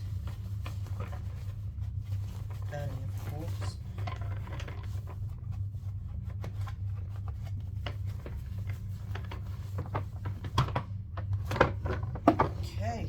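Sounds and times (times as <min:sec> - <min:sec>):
cloth rubbing on plastic: 0:00.0 - 0:10.4
rustles and small knocks: 0:00.0 - 0:12.7.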